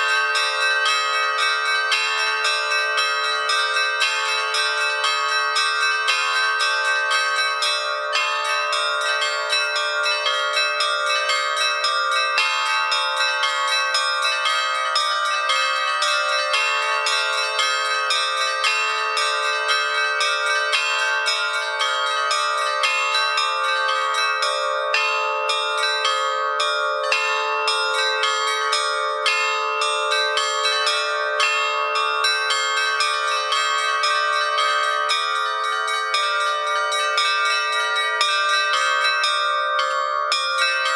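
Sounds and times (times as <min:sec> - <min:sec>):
bells ringing: 0:00.0 - 0:40.9.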